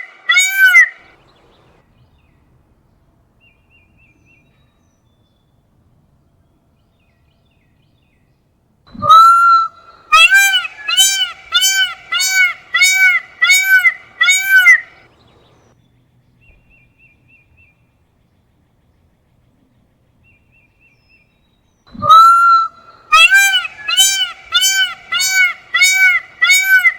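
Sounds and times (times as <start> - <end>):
peacock calling: 0.0 - 5.5, 8.9 - 15.8, 19.0 - 26.9
small birds chirping: 0.4 - 26.9.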